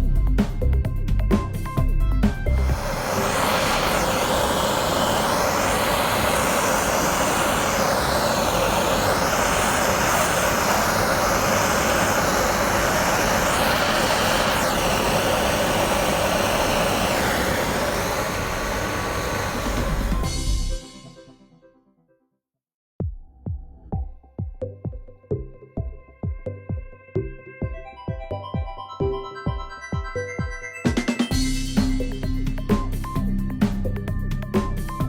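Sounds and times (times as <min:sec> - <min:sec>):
spray gun hissing: 0:02.6 - 0:20.7.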